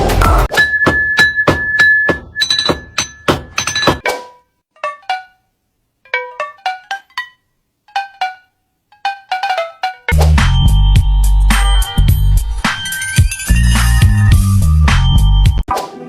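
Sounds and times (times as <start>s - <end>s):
rhythmic strikes with high tone: 0.5s - 4.1s, 6.1s - 14.1s
pitched plinking notes: 0.6s - 4.1s, 6.1s - 12.2s.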